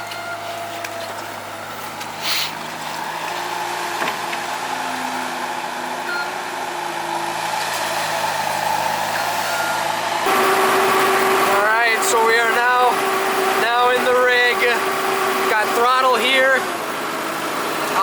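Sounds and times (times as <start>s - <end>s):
diesel engine running: 0.0s - 18.0s
short hiss: 2.2s - 2.6s.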